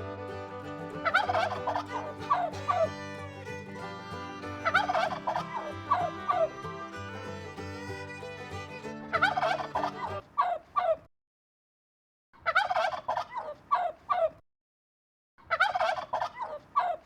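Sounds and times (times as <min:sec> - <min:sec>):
background music: 0:00.0 - 0:10.2
turkey gobbling: 0:01.0 - 0:02.9, 0:04.6 - 0:06.5, 0:09.1 - 0:11.0, 0:12.4 - 0:14.3, 0:15.5 - 0:17.0.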